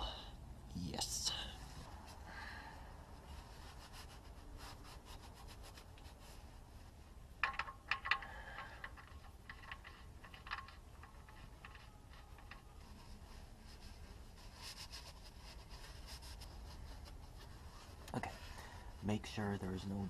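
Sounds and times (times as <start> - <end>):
light clicks and clinks: 7.3 - 13.1.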